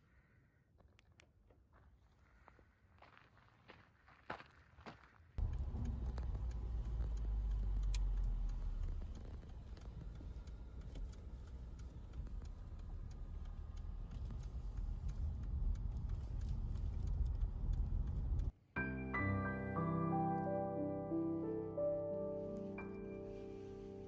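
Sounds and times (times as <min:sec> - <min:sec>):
small clicks and rattles: 0:05.4 - 0:18.5
car engine and road noise: 0:05.4 - 0:18.6.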